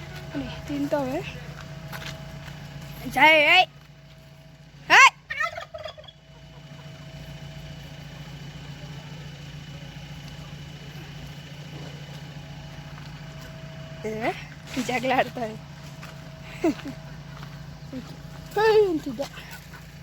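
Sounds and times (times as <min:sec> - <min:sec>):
low background hum: 0:00.0 - 0:20.0
chicken squawk: 0:04.9 - 0:06.9
chicken clucking: 0:05.4 - 0:07.4.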